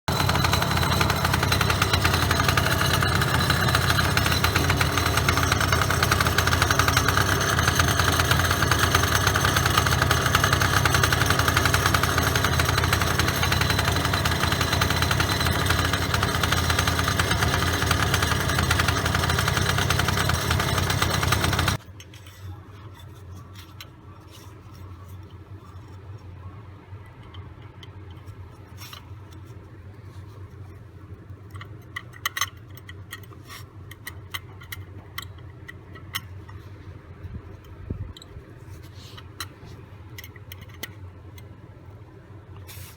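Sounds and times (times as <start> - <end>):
scooter engine rattling: 0.1 - 21.8.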